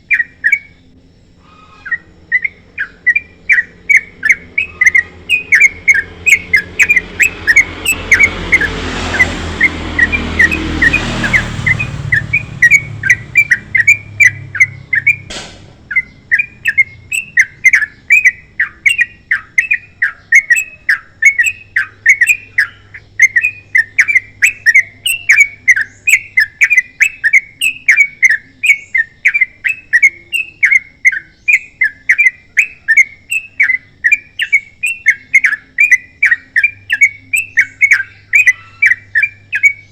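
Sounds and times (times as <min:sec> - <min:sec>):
bird singing chirped notes: 0:00.0 - 0:39.9
low rushing noise: 0:02.0 - 0:18.1.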